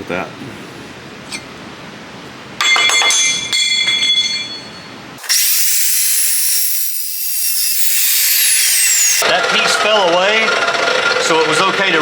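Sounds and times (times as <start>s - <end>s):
steel clanking and ringing: 2.6s - 5.5s
chop saw cutting steel: 5.2s - 9.8s.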